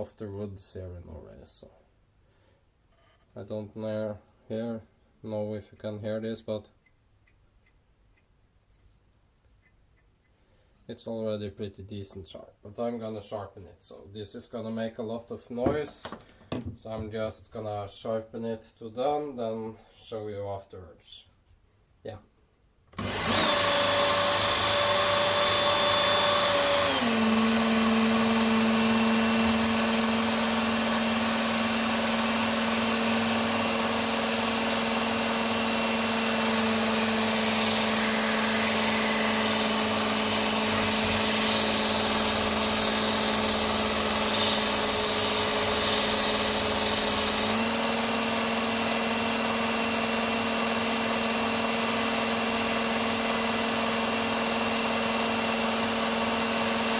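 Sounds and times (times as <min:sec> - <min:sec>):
belt sharpener motor whine: 0:23.0 - 0:56.9.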